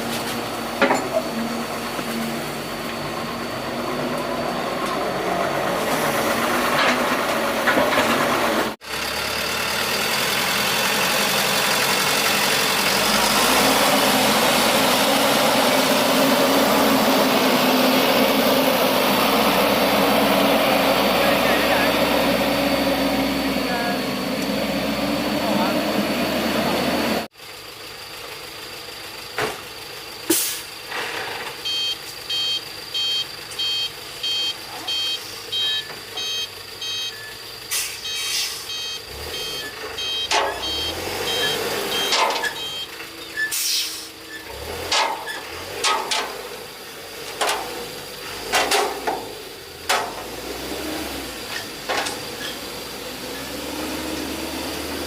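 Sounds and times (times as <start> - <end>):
diesel engine running: 0.0 - 55.0
backup alarm beeping: 31.6 - 37.4, 38.0 - 43.0
sharp knocks and clunks: 48.5 - 50.3.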